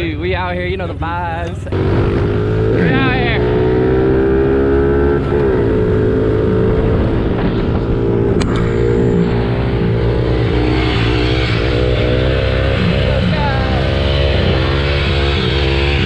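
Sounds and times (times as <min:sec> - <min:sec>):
dirt bike engine running: 0:00.0 - 0:16.0
sharp click: 0:08.4 - 0:08.8.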